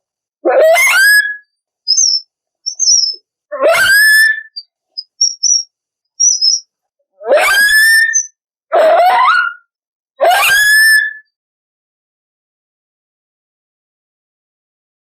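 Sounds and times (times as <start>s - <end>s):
dog squeaking: 0.5s - 5.6s, 6.2s - 6.6s.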